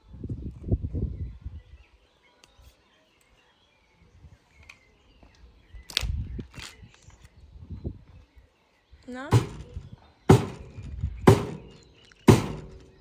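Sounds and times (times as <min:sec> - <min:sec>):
sharp knock: 0:09.3 - 0:13.0.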